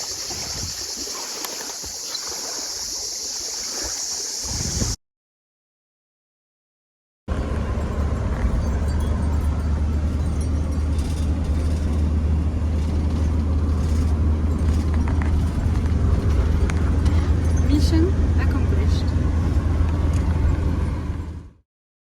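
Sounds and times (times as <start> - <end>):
van engine and road noise: 7.3 - 21.6.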